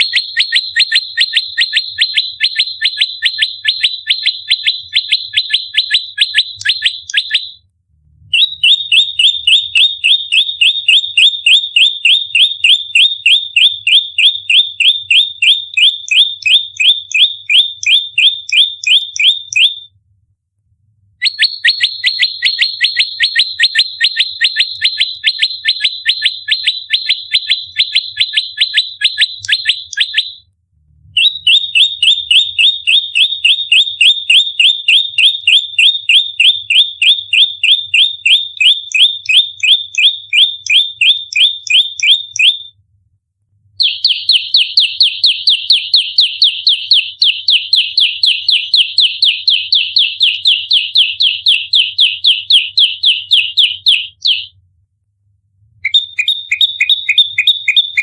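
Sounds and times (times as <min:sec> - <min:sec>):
bird rapid chipping call: 0:55.9 - 0:58.0.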